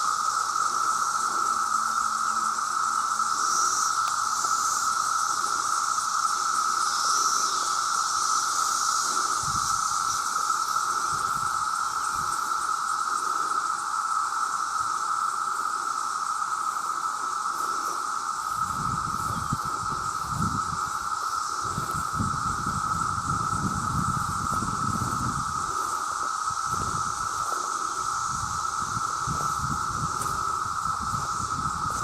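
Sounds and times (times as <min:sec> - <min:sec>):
cicadas chorus droning: 0:00.0 - 0:32.0.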